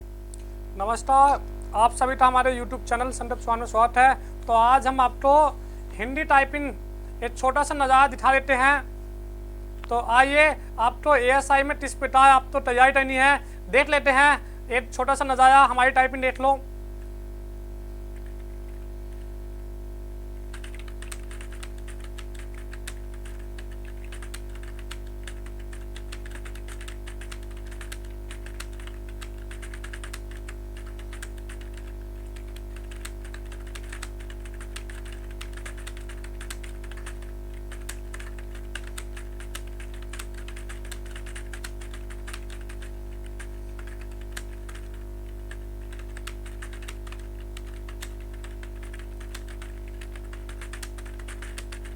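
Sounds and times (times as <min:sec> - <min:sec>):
steady low hum: 0:00.0 - 0:51.9
fast typing on keyboard: 0:18.2 - 0:18.8, 0:20.5 - 0:51.9.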